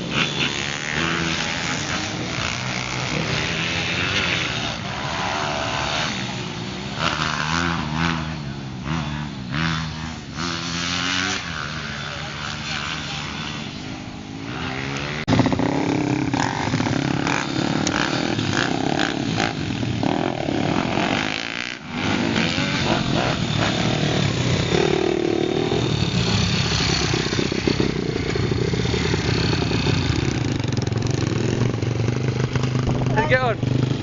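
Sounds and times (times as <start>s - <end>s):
dirt bike engines revving: 0.0s - 34.0s.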